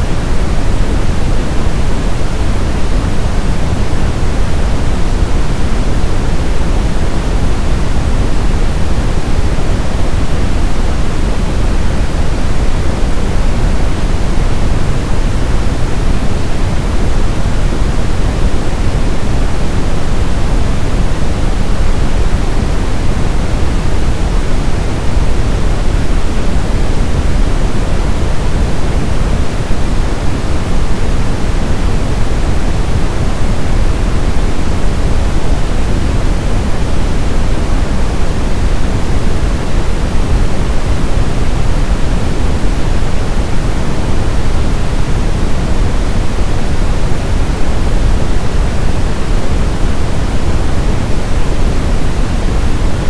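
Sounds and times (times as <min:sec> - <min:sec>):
brown noise rumble: 0:00.0 - 0:53.0.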